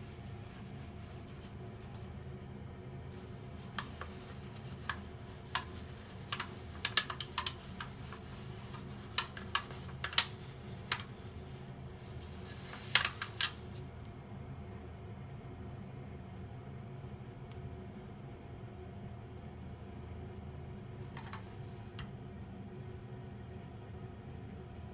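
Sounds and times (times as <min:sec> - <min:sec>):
low steady hum: 0:00.0 - 0:14.1
plastic clicks and taps: 0:03.7 - 0:11.2, 0:12.4 - 0:13.6, 0:21.1 - 0:22.1.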